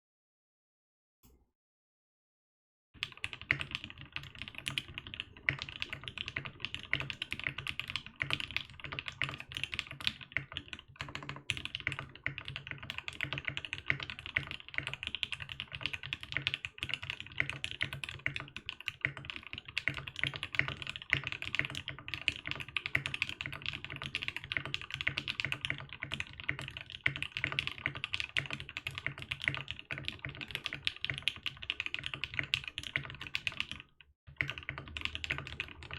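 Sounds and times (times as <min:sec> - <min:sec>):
mechanical keyboard typing: 0:03.0 - 0:35.9.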